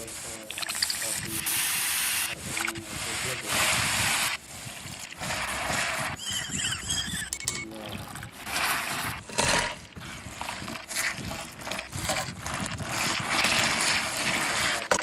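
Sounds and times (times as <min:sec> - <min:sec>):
hot oil sizzling: 0:00.0 - 0:09.2.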